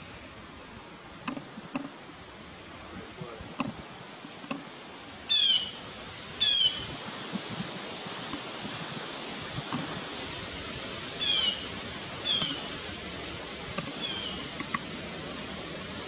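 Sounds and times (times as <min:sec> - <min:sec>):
outdoor background hiss: 0:00.0 - 0:16.0
bird calling: 0:05.2 - 0:07.0, 0:11.2 - 0:12.8, 0:13.8 - 0:14.8.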